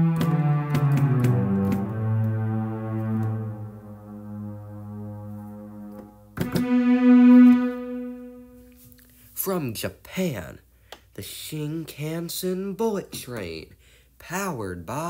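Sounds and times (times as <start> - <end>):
synthesizer chords: 0.0 - 8.9.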